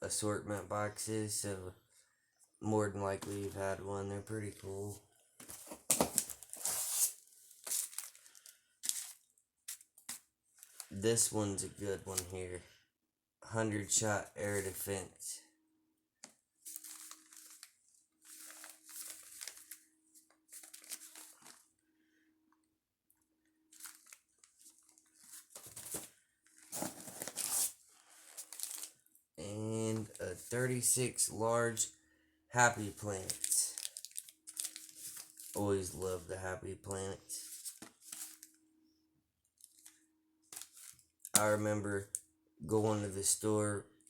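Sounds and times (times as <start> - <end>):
packaging crinkling and rustling: 5.4 - 10.9, 16.6 - 21.7, 23.6 - 29.2, 33.2 - 35.6, 37.5 - 38.6, 39.6 - 41.6.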